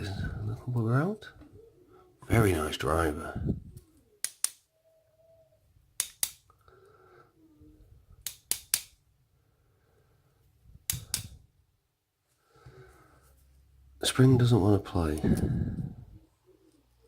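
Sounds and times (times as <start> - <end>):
sharp metallic clicks: 4.2 - 4.6, 6.0 - 6.5, 8.2 - 9.0, 10.9 - 11.4.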